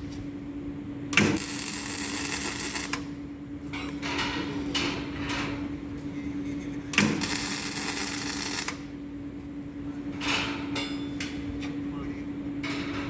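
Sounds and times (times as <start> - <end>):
steady hum: 0.0 - 3.8, 5.6 - 10.0
welding arc crackling: 1.2 - 3.2, 7.0 - 8.9.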